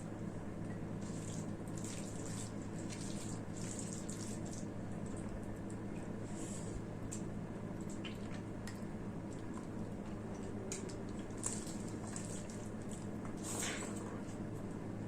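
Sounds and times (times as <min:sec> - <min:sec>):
steady low hum: 0:00.0 - 0:15.0
person chewing wetly: 0:07.0 - 0:14.2.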